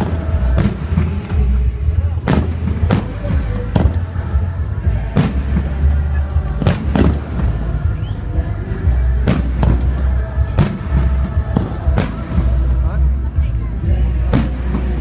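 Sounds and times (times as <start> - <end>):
fireworks bangs: 0.0 - 8.3, 9.2 - 12.8, 14.2 - 15.0
deep rumble: 0.0 - 15.0.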